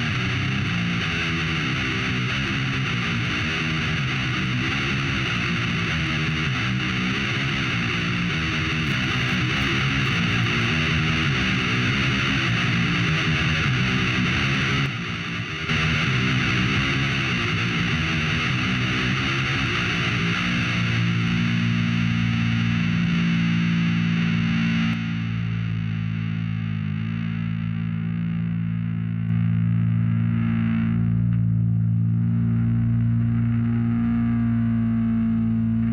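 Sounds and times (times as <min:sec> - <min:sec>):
heavy metal distorted guitars: 0:00.0 - 0:21.8
heavy metal music: 0:08.8 - 0:10.8.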